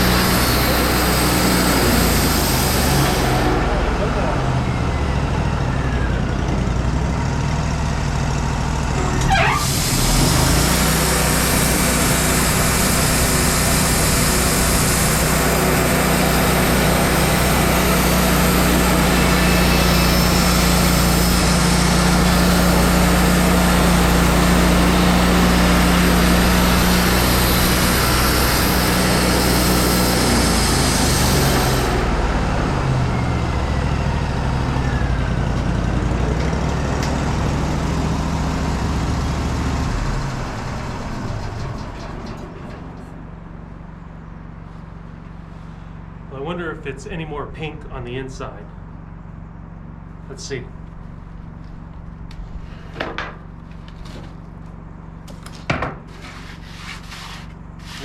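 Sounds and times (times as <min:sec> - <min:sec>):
sawmill engine running: 0:00.0 - 0:58.0
saw blade cutting log hiss: 0:56.5 - 0:58.0.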